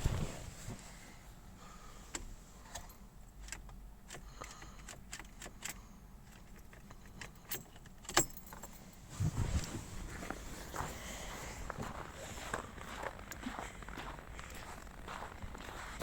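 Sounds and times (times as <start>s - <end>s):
light jingling: 7.4s - 9.1s.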